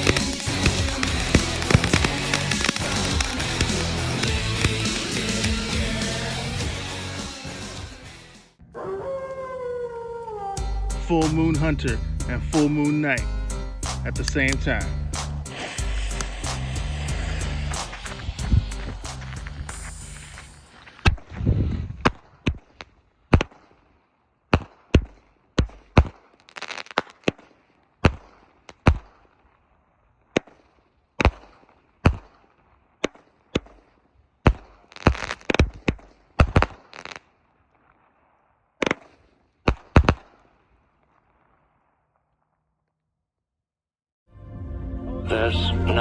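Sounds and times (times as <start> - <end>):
firework shot reports: 0.0 - 6.0, 14.0 - 22.3
firework crackling: 0.0 - 8.0, 14.0 - 23.9, 24.6 - 29.4, 30.3 - 38.2, 38.8 - 41.1.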